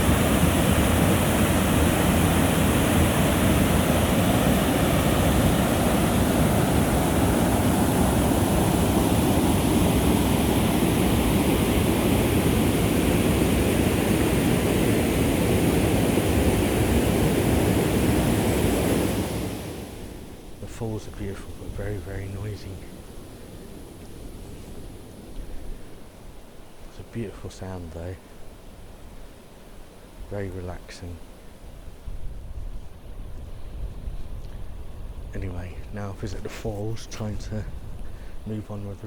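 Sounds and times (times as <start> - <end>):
waterfall rushing: 0.0 - 19.8.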